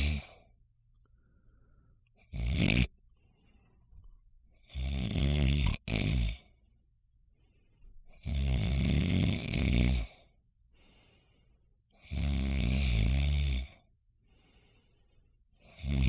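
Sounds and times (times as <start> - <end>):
man snoring: 0.0 - 0.5, 2.2 - 2.9, 4.6 - 6.6, 8.1 - 10.4, 11.9 - 13.9, 15.6 - 16.0.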